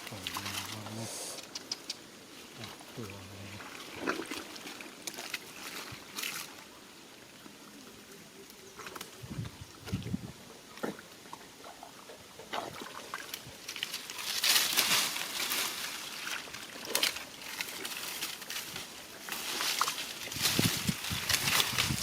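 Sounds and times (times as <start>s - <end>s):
water sloshing and splashing: 0.0s - 1.1s, 2.3s - 7.5s, 8.6s - 22.0s.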